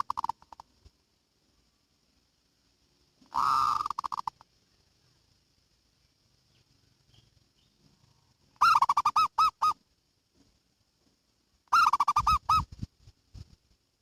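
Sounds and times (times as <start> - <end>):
dove singing: 0.0 - 0.6, 3.3 - 4.4, 6.5 - 9.8, 11.7 - 12.8.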